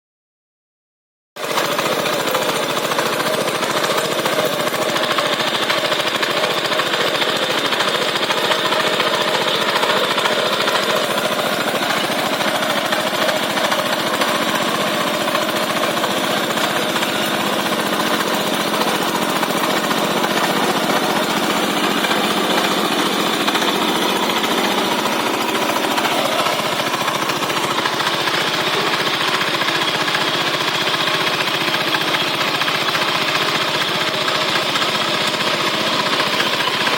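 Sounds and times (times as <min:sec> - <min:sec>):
machine engine running: 0:01.4 - 0:36.9
rapid hammering beat: 0:02.4 - 0:28.6.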